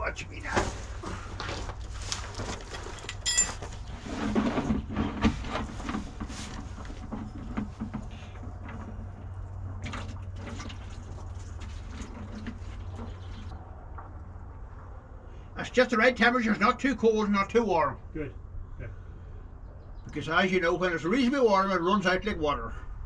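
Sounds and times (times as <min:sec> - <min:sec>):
steady low hum: 0:12.8 - 0:23.0.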